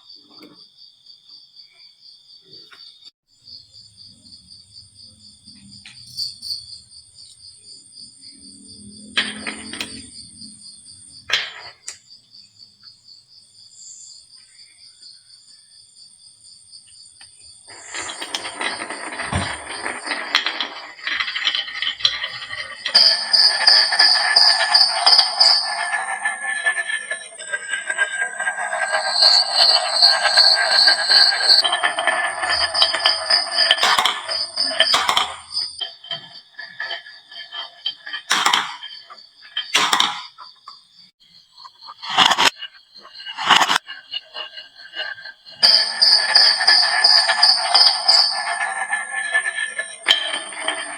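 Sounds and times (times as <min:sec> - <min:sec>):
faint cricket-like chirping: 0:00.0 - 0:50.9
glass marbles rattling down wood: 0:08.4 - 0:12.0, 0:17.3 - 0:40.6, 0:41.9 - 0:50.9.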